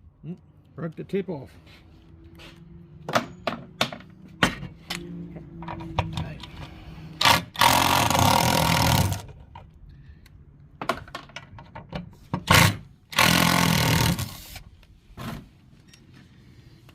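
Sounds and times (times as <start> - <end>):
power tool buzzing: 7.2 - 9.2, 12.5 - 14.6.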